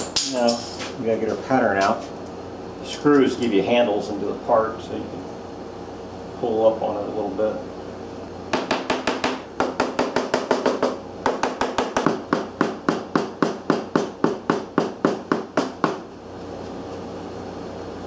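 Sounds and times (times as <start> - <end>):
rapid tapping on sand mold pattern: 8.5 - 16.1.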